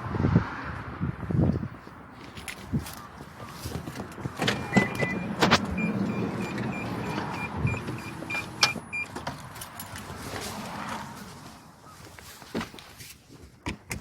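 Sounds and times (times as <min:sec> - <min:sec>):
high electronic beeps: 0:04.6 - 0:09.1.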